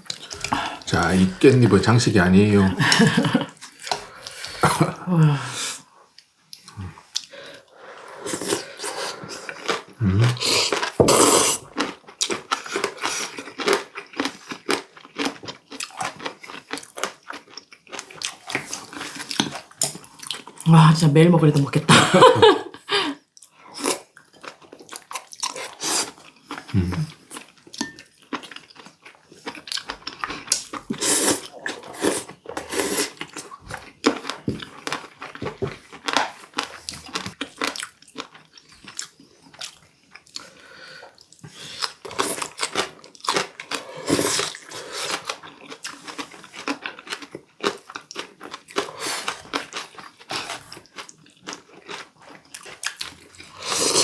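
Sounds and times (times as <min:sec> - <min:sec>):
chewing and crunching: 0:08.4 - 0:11.0, 0:11.6 - 0:20.6, 0:23.3 - 0:54.0.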